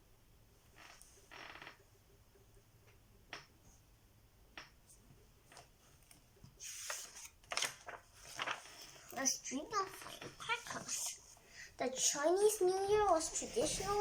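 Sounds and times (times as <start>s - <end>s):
book pages rustling: 5.5s - 11.4s, 12.6s - 14.0s.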